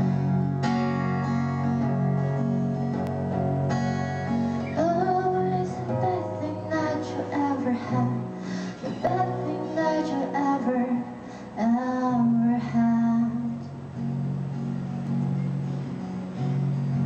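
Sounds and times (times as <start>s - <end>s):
instrumental accompaniment: 0.0s - 17.0s
woman singing: 4.6s - 13.7s.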